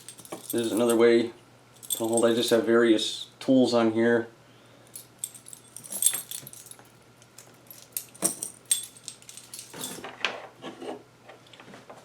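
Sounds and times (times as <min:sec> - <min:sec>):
keys jangling and clinking: 0:00.0 - 0:01.0, 0:01.8 - 0:02.7, 0:04.9 - 0:10.1.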